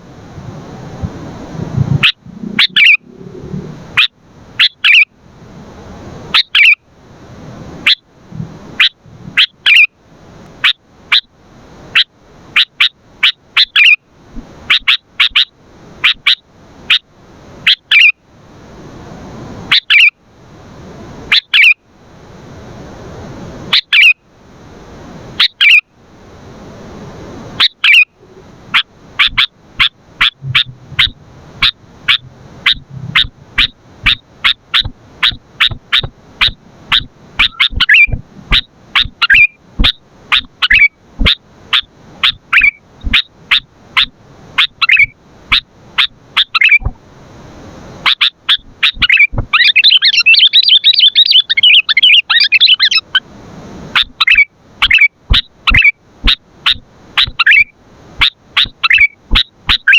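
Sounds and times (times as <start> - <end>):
bulbul calling sharp notes: 2.0 - 3.4, 28.8 - 41.4.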